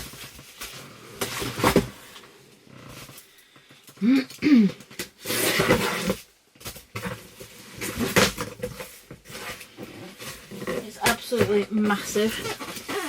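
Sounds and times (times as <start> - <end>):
cardboard box rustling and scraping: 0.0 - 3.2, 5.2 - 13.0
grunt-like vocal sounds: 4.0 - 4.8.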